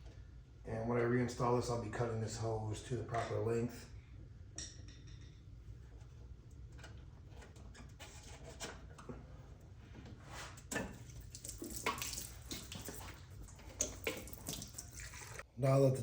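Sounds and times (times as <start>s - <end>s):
fuel trickling into container: 11.0s - 15.5s.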